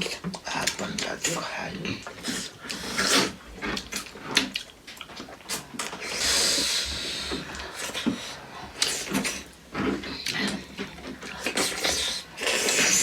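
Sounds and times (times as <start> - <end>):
chewing and lip-smacking: 0.0 - 13.0
breathy hiss: 6.0 - 9.4.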